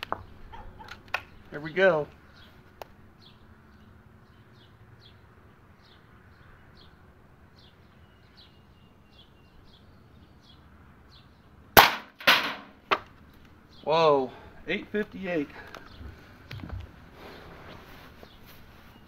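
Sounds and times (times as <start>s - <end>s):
air rifle shot crack: 11.8s - 12.7s
pellet striking target: 11.8s - 13.0s.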